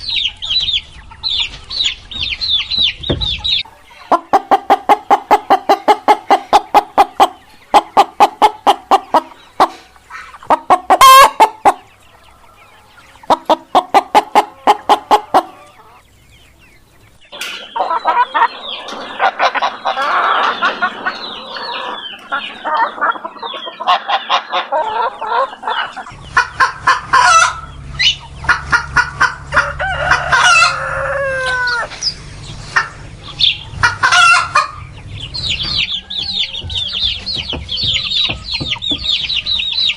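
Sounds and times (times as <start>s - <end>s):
chickens cackling: 0.0s - 39.9s
hens clucking and squawking: 0.0s - 39.9s
low steady hum: 11.5s - 39.9s.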